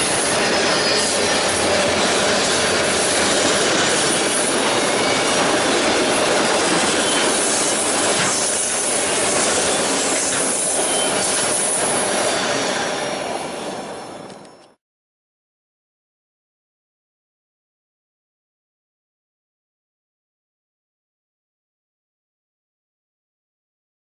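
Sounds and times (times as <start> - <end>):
freight train wheels on rails: 0.0 - 14.7
wheel squeal: 0.0 - 14.7.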